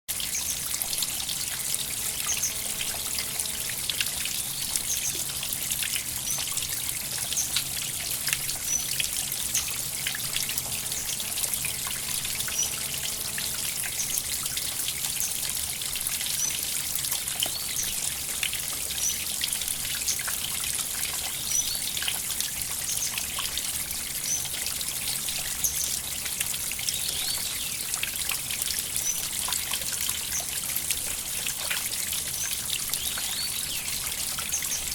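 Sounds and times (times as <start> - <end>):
river water trickling: 0.1 - 34.9
water splashes and drips: 0.1 - 34.9
faint high chirps: 1.6 - 5.3.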